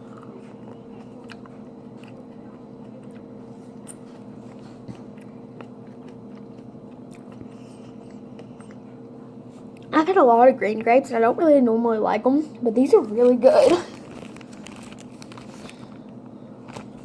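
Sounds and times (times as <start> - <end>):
person chewing grapes: 0.0 - 9.9.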